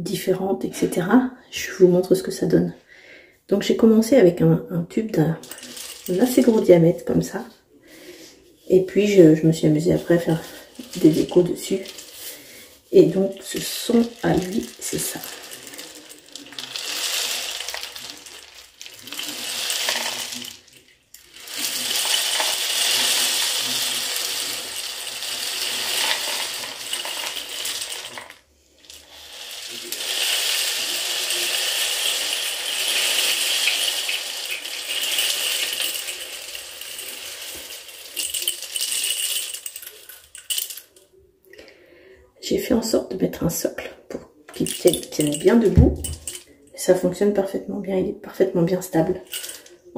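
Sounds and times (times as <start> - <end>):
rain stick pattering rush: 5.4 - 6.6, 10.0 - 41.0, 44.5 - 46.5, 49.2 - 49.8.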